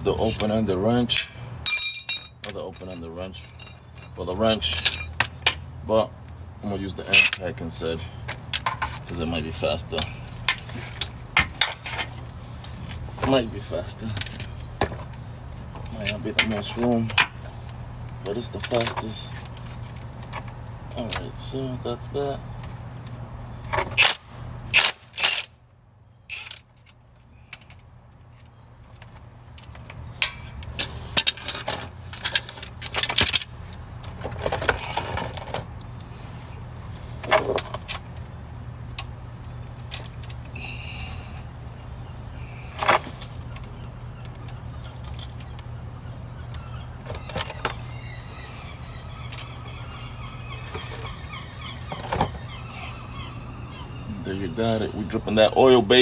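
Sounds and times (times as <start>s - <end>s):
steady low hum: 0.0s - 56.0s
metal tools clinking and scraping: 0.3s - 5.6s, 7.0s - 7.9s, 26.3s - 26.9s, 30.2s - 33.5s.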